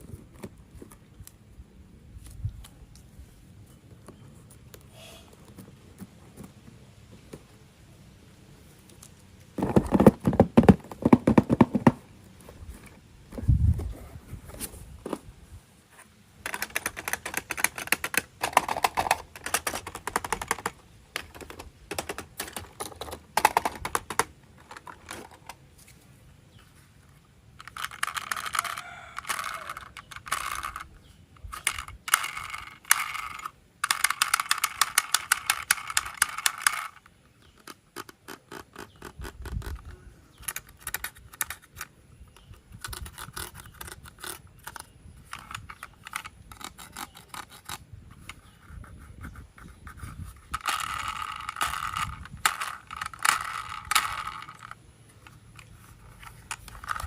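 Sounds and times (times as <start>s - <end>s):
plastic pieces clicking and tapping: 16.4s - 25.6s, 27.6s - 48.4s, 50.0s - 57.0s.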